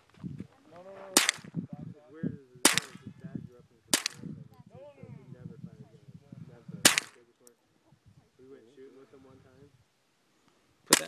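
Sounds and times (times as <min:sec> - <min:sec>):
suppressed rifle shots: 0:01.1 - 0:01.5, 0:02.6 - 0:03.1, 0:03.9 - 0:04.3, 0:06.8 - 0:07.2.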